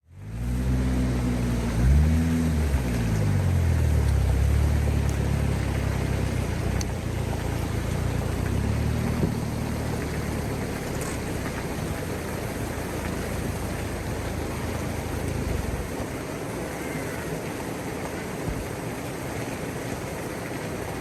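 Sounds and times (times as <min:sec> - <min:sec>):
vehicle engine running: 0:00.0 - 0:16.3
constant hiss: 0:00.1 - 0:21.0.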